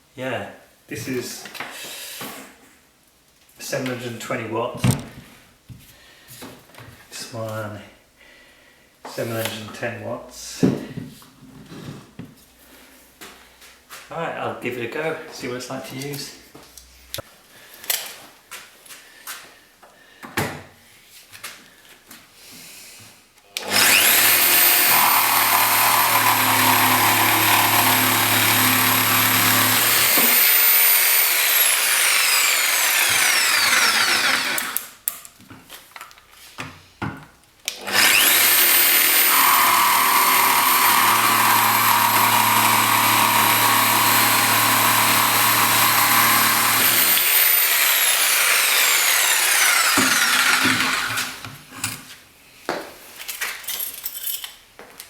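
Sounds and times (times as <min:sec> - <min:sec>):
jigsaw cutting wood: 0:23.6 - 0:34.9, 0:37.7 - 0:51.5.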